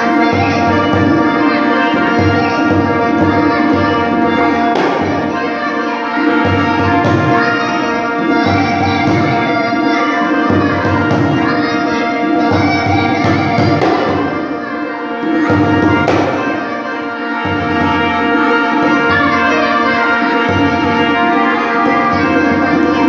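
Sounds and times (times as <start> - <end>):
drum beats: 0.3 - 5.5, 10.4 - 14.6, 15.3 - 16.8.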